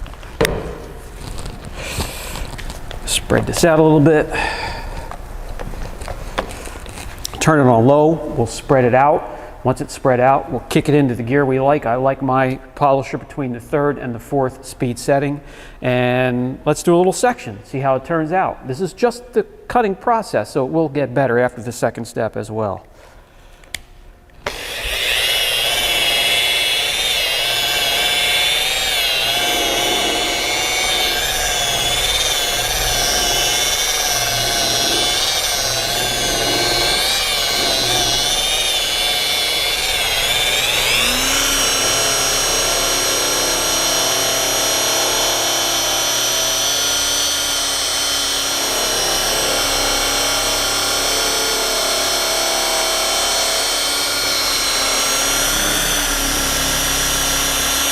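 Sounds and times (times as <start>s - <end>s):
rotary polisher whining: 0.0s - 7.4s, 23.7s - 57.9s.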